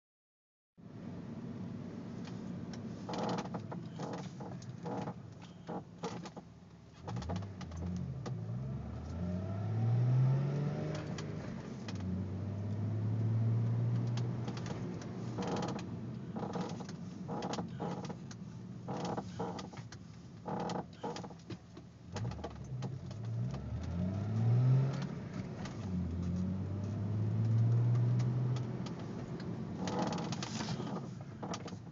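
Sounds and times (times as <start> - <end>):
car creaks and clicks: 2.2 - 9.5, 10.1 - 31.9
car engine accelerating: 7.1 - 18.1, 22.1 - 31.6.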